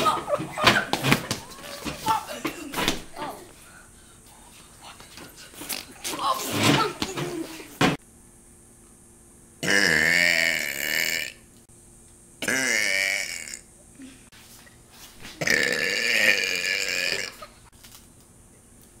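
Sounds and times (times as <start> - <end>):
person burping: 9.6 - 11.4, 12.4 - 14.2, 15.4 - 17.6.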